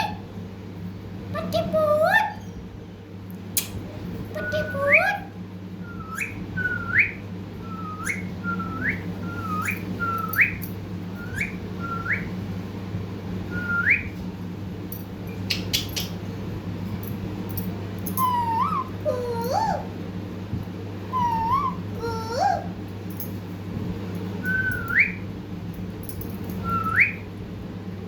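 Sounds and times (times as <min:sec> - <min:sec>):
low hum: 0:00.3 - 0:28.0
parrot whistling upswept call: 0:06.0 - 0:10.6, 0:18.2 - 0:19.8, 0:21.1 - 0:22.7.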